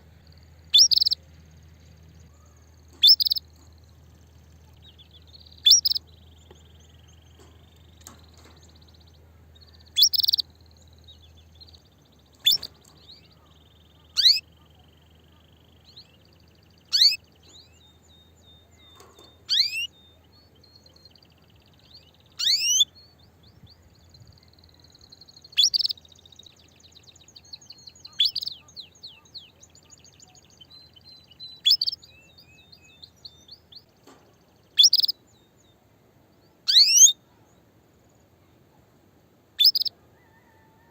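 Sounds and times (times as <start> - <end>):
bird trills and twittering: 0.0 - 38.7, 39.6 - 40.9
canary call notes: 0.7 - 1.2, 2.3 - 3.4, 5.6 - 6.0, 10.0 - 10.5, 13.3 - 15.5, 16.9 - 17.2, 19.5 - 19.9, 22.4 - 22.9, 34.8 - 35.2, 36.7 - 37.2, 39.6 - 40.8.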